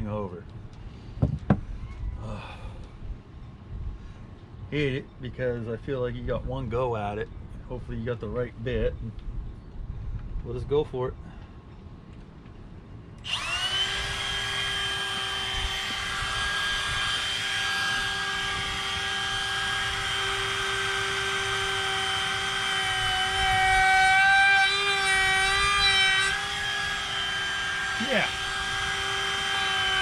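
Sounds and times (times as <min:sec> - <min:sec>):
electric router whining: 0:13.2 - 0:30.0
router bit cutting wood: 0:13.2 - 0:30.0.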